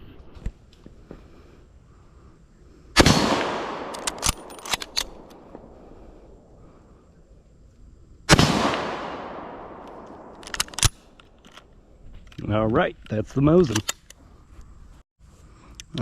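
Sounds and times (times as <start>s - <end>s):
rifle shots with echo: 3.0s - 5.7s, 8.3s - 11.0s
rifle bolt metallic clicks: 3.8s - 5.5s, 9.8s - 14.2s.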